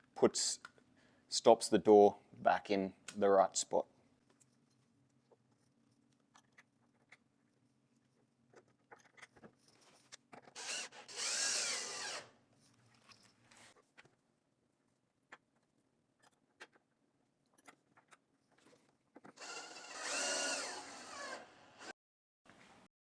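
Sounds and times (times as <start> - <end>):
power drill whining: 10.6 - 12.3, 19.4 - 22.0.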